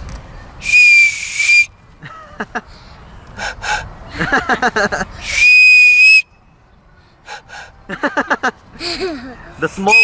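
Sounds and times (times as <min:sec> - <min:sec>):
toy whistle blasts: 0:00.6 - 0:01.7, 0:05.2 - 0:06.2.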